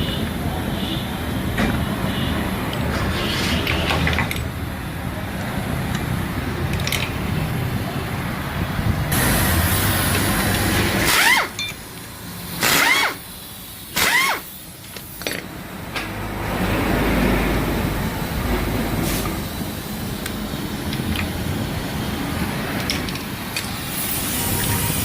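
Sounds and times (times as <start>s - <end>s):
compressed-air tool bursts: 9.1s - 11.7s, 12.4s - 15.2s, 23.6s - 25.0s.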